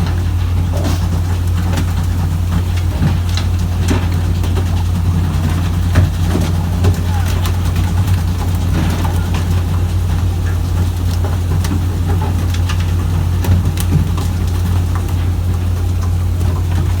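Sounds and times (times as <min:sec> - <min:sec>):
boat engine droning: 0:00.0 - 0:17.0.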